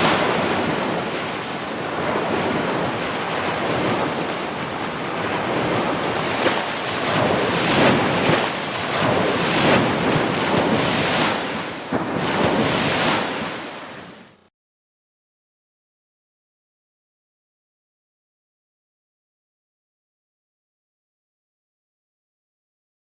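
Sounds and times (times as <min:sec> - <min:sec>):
ocean waves washing in: 0:00.0 - 0:14.5.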